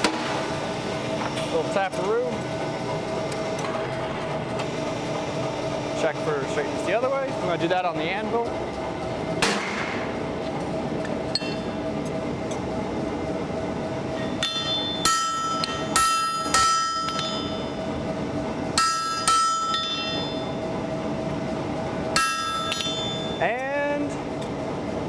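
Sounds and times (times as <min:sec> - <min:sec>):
shop equipment hum: 0:00.0 - 0:25.0
hammer striking steel anvil: 0:11.3 - 0:11.7, 0:14.3 - 0:17.6, 0:18.8 - 0:20.4, 0:22.2 - 0:23.4.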